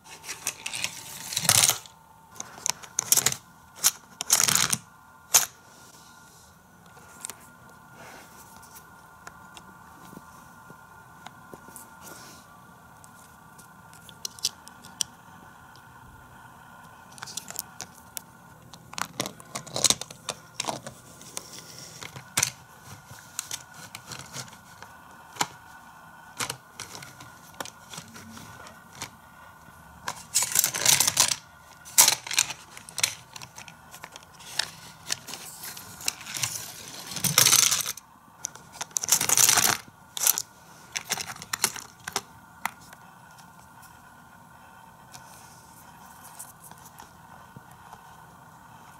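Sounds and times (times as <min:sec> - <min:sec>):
toy cars clattering on plastic: 0:00.1 - 0:05.6, 0:18.8 - 0:25.6, 0:26.4 - 0:28.3, 0:30.1 - 0:42.8.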